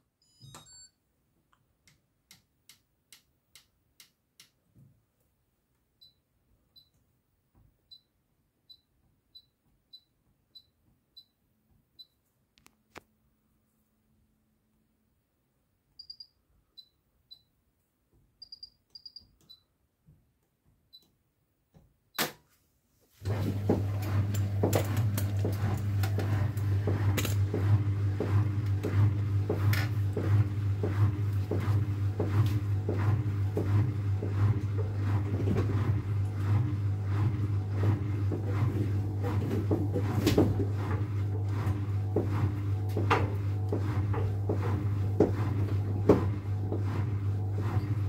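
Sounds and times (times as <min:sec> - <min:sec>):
washing machine control panel beeps: 0:00.2 - 0:01.0, 0:06.0 - 0:07.0, 0:07.9 - 0:08.1, 0:08.7 - 0:11.4, 0:12.0 - 0:12.2, 0:16.0 - 0:17.5, 0:18.4 - 0:19.7
laundry tumbling in drum: 0:23.2 - 0:48.0
washing machine motor hum: 0:23.2 - 0:48.0.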